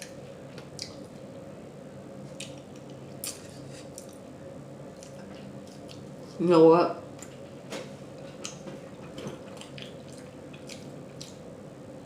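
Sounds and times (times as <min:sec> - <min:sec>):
wet mouth smacking while chewing: 0:09.5 - 0:11.4.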